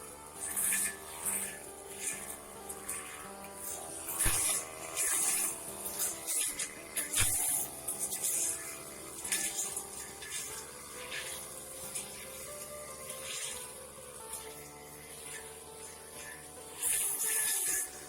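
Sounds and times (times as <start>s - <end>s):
music with sustained chords: 0.0s - 18.0s.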